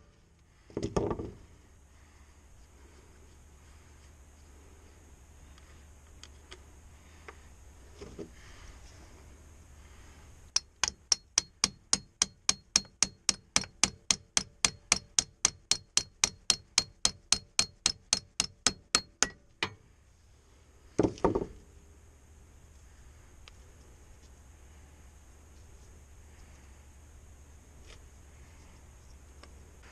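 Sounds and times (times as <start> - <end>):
hammer striking metal: 10.6 - 19.8.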